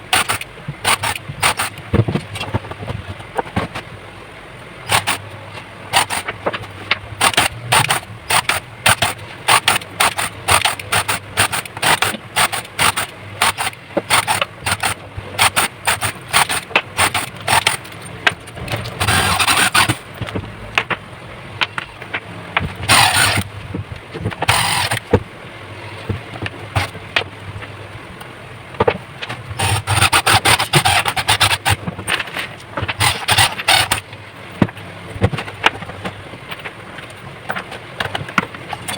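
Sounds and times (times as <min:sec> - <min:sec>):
drill drilling plastic: 0:00.0 - 0:01.8, 0:04.8 - 0:05.2, 0:05.9 - 0:06.4, 0:07.2 - 0:17.9, 0:18.7 - 0:20.0, 0:22.8 - 0:23.5, 0:24.4 - 0:25.2, 0:26.8 - 0:27.0, 0:29.6 - 0:31.8, 0:32.9 - 0:34.1
sharp clicks and knocks: 0:00.0 - 0:03.9, 0:04.8 - 0:38.9.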